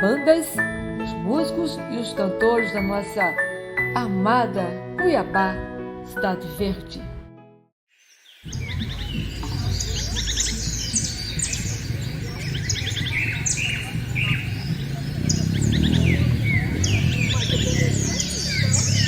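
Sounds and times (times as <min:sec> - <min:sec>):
small birds chirping and trilling: 0:08.0 - 0:19.0.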